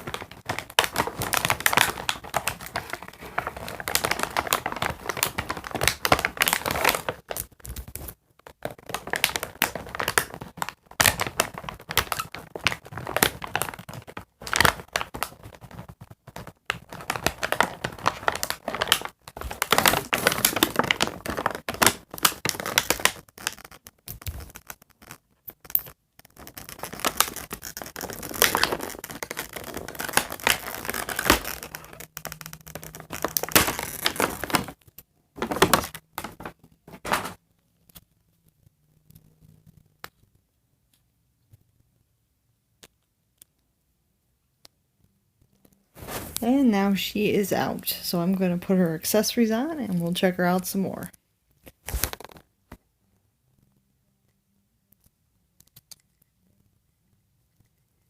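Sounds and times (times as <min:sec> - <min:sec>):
packaging crinkling and tearing: 0:00.0 - 0:39.3, 0:46.0 - 0:48.1, 0:48.7 - 0:52.5.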